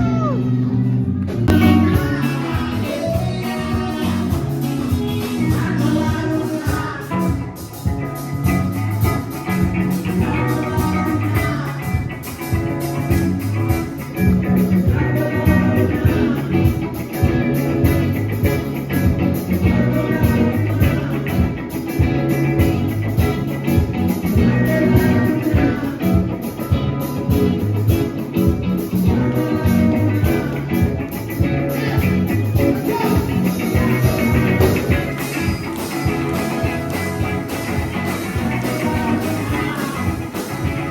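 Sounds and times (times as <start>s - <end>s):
person singing: 0.0s - 7.9s, 9.6s - 13.2s, 13.8s - 23.3s, 24.1s - 27.4s, 28.8s - 40.9s
band playing: 0.0s - 40.9s.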